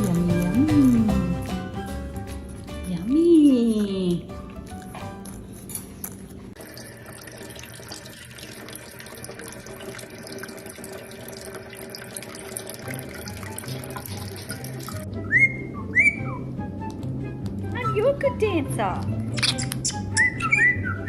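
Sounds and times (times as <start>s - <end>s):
water running from a tap: 6.6s - 15.1s
rising and falling whistles: 15.2s - 16.5s, 20.1s - 21.0s.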